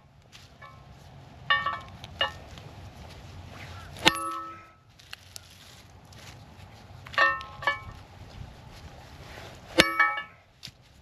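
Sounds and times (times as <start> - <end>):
hammer striking steel: 1.5 - 2.4, 4.0 - 4.7, 7.2 - 8.0, 9.8 - 10.4.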